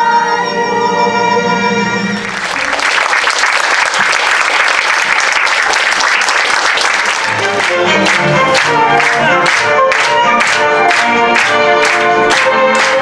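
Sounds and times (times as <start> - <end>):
audience applauding: 2.2 - 13.0
instrumental music: 7.2 - 13.0.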